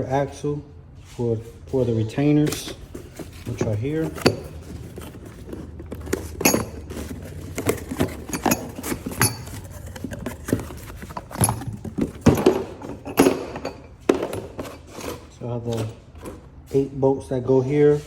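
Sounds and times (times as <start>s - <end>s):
steel bolts clinking: 6.0s - 10.1s.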